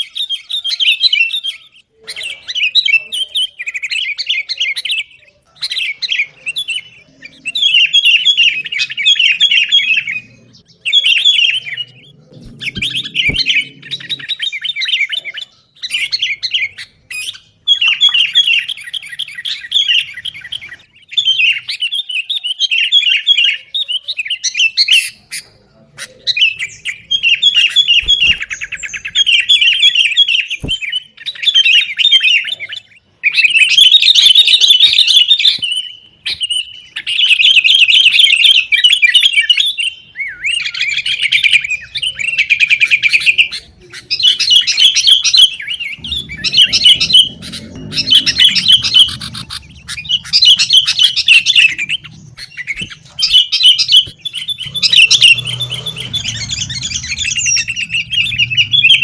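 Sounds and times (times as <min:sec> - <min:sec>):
birds chattering song: 0:00.0 - 0:59.0
faint low rumble: 0:45.5 - 0:52.7, 0:54.6 - 0:59.0.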